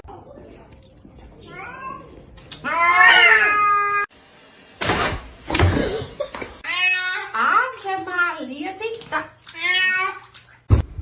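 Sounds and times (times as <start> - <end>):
cat meowing: 1.4 - 4.1.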